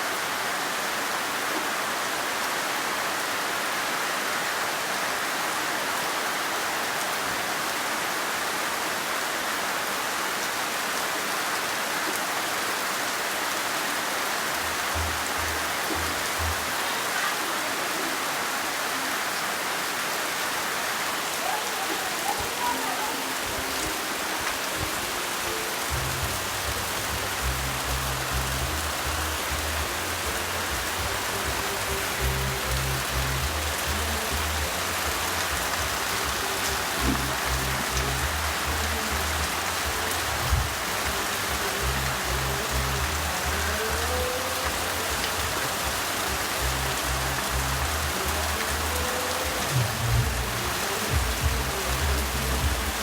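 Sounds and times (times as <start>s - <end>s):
heavy rain pouring: 0.0s - 53.0s
music with low bass beat: 25.9s - 49.0s, 49.6s - 53.0s.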